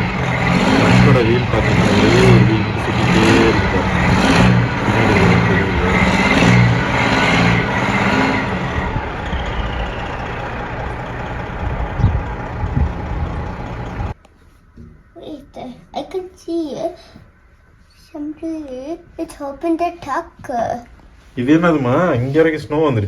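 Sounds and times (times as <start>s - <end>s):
vehicle engine revving: 0.0s - 14.2s.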